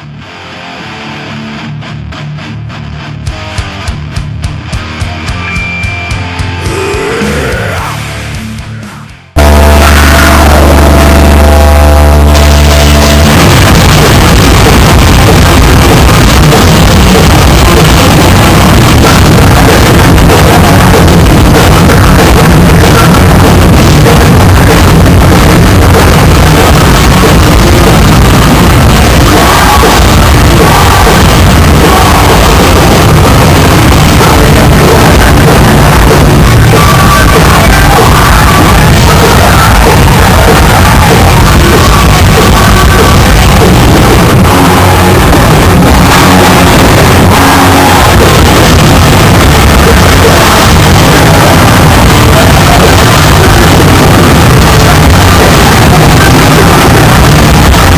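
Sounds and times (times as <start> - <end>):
distorted punk band playing: 0.0 - 57.9
person shouting vocals: 6.6 - 8.0.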